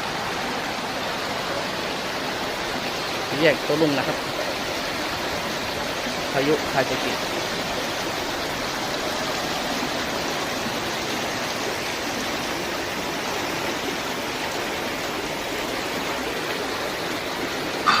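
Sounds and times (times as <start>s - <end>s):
floodwater rushing: 0.0s - 18.0s.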